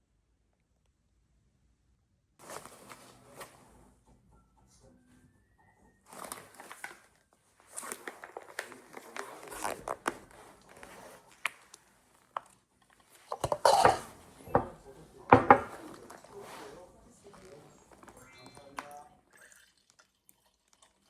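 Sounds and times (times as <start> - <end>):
crinkling and rustling: 2.4 - 3.8, 6.1 - 18.9.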